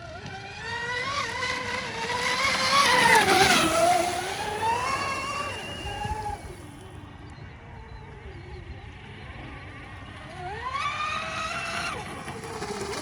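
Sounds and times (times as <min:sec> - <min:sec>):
model boat motors whining: 0:00.0 - 0:13.0.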